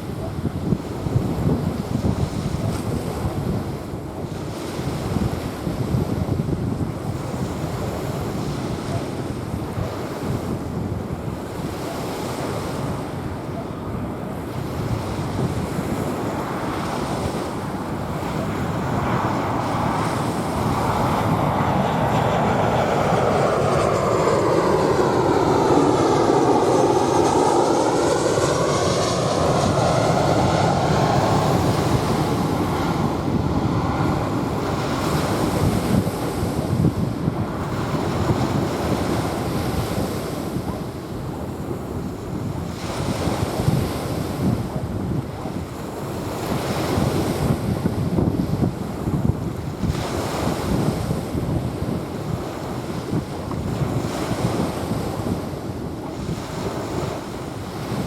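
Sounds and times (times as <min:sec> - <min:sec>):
jet airliner passing overhead: 0:00.0 - 0:58.0
wind on microphone: 0:00.0 - 0:58.0
waves washing onto beach: 0:29.2 - 0:58.0.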